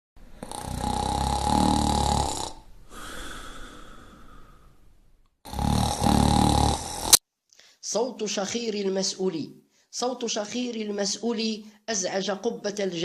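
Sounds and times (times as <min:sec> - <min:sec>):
person snoring: 0:00.3 - 0:04.8, 0:05.4 - 0:07.2.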